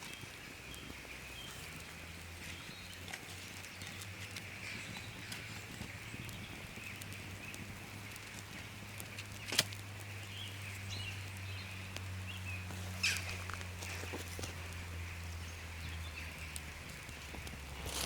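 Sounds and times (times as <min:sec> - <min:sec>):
campfire crackling: 0:00.0 - 0:18.0.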